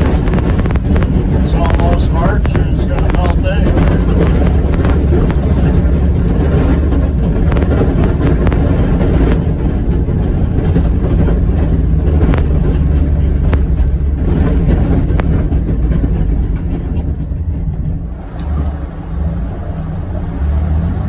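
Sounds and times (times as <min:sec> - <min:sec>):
utility vehicle engine running: 0:00.0 - 0:21.0.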